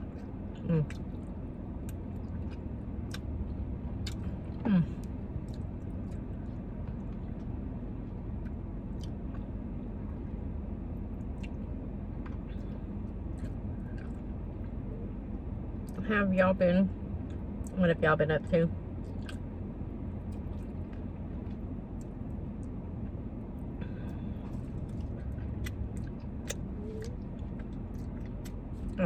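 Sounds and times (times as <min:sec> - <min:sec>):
steady low hum: 0:00.0 - 0:29.0
person chewing food: 0:00.1 - 0:07.6, 0:08.4 - 0:09.6, 0:11.2 - 0:11.6, 0:12.2 - 0:15.0, 0:24.0 - 0:29.0.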